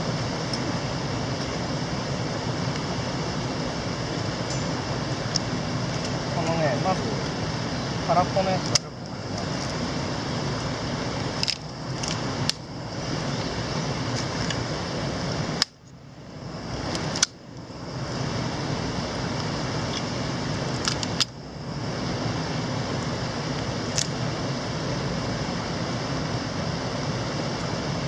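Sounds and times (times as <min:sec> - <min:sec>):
sharp clicks and clinks: 0:04.5 - 0:04.8.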